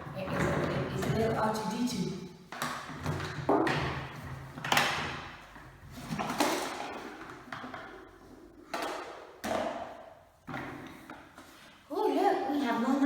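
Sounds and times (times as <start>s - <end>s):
plastic parts knocking: 2.5s - 11.6s.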